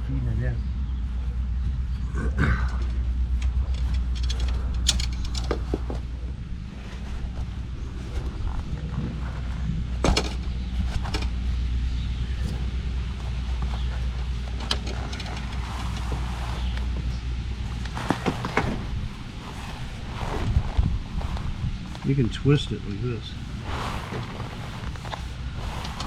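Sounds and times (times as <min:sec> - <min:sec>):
low engine-like hum: 0:00.0 - 0:26.0
sharp knocks and clatters: 0:02.8 - 0:06.1, 0:10.0 - 0:11.4.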